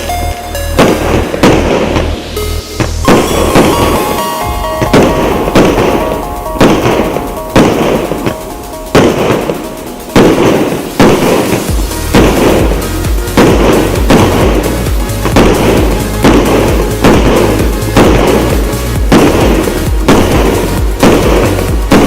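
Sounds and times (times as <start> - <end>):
background music: 0.0 - 22.0
firework shots banging: 0.0 - 22.0.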